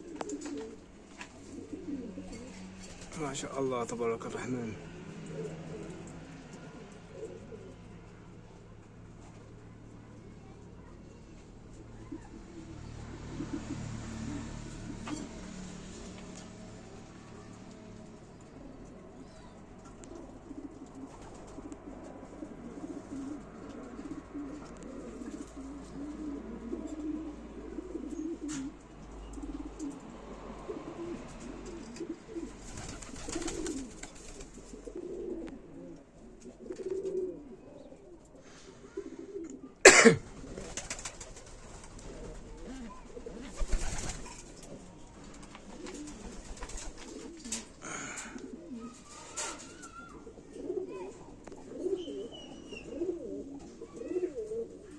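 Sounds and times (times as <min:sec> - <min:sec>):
pigeons cooing: 0:00.0 - 0:10.9, 0:11.7 - 0:54.9.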